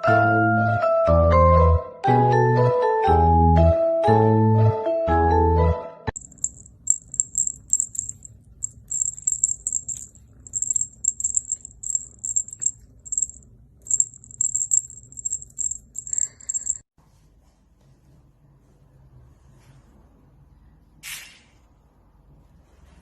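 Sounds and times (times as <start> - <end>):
small jingle bell shaken: 6.2 - 16.8.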